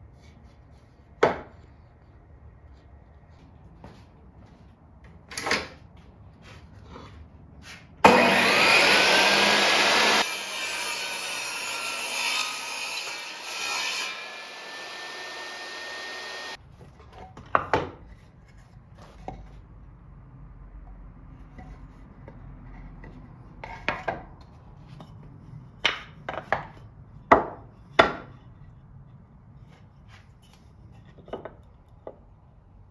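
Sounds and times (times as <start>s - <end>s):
power tool whining on wood: 8.1s - 10.3s, 14.1s - 16.6s.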